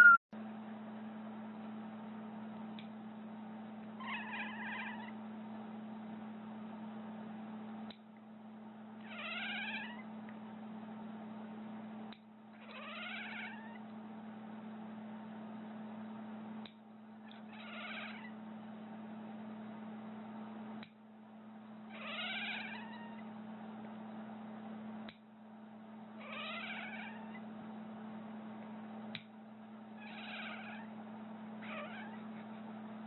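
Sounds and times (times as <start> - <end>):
steady low hum: 0.0 - 33.0
cat meowing: 4.0 - 5.1, 9.1 - 10.0, 12.6 - 13.8, 17.5 - 18.3, 22.0 - 23.2, 26.2 - 27.4, 30.0 - 30.9, 31.6 - 32.3.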